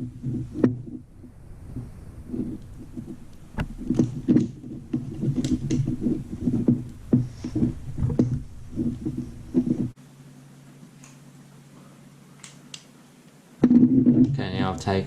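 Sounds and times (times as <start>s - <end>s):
low uneven rumble: 0.0s - 10.0s
hands clicking and knocking on metal: 2.9s - 10.0s.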